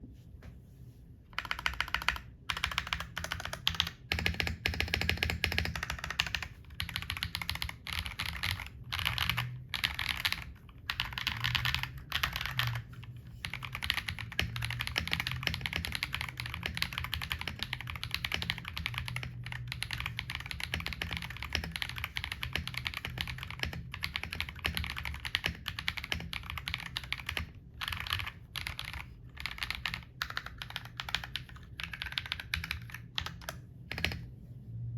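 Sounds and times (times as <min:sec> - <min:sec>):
mechanical keyboard typing: 0:01.4 - 0:34.3.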